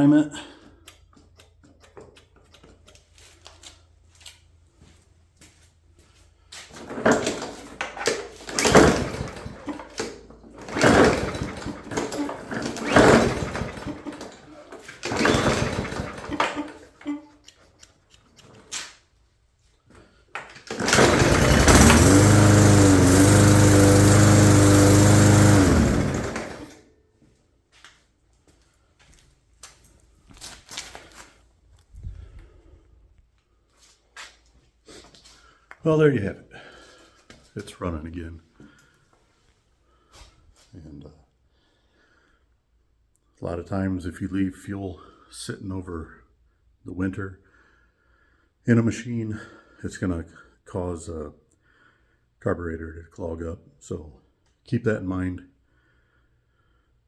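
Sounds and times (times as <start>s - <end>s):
lawnmower engine cranking and running: 6.6s - 18.9s, 20.4s - 26.8s.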